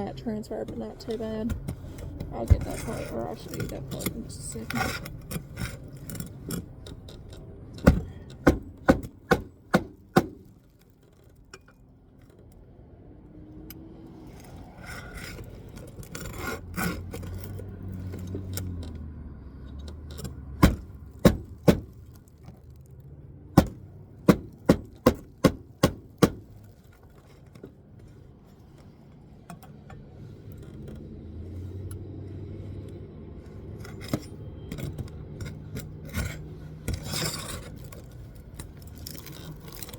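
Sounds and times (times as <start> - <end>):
scraping and rubbing: 0.0 - 11.5, 13.9 - 23.0, 23.6 - 39.9
hammer striking nails: 7.8 - 10.4, 20.6 - 22.0, 23.6 - 26.5.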